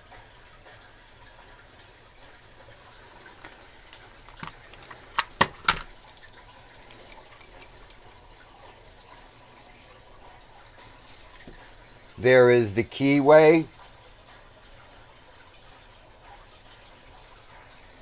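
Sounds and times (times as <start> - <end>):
keys and padlocks clicking: 4.3 - 8.2
keys jingling: 4.3 - 8.2.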